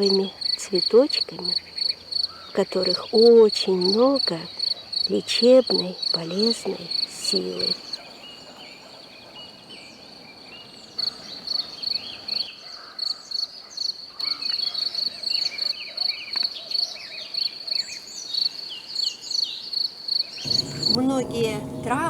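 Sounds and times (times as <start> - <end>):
insects trilling: 0.0 - 13.2.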